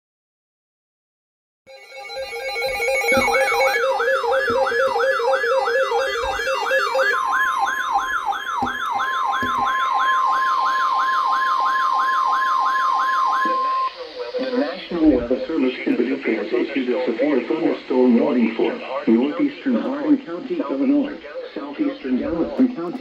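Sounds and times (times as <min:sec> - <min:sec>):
electronic siren wailing: 0:01.7 - 0:15.7
pulsing electronic beeps: 0:01.7 - 0:15.7
steady high tone: 0:01.7 - 0:15.8
dull thumps: 0:02.8 - 0:10.0.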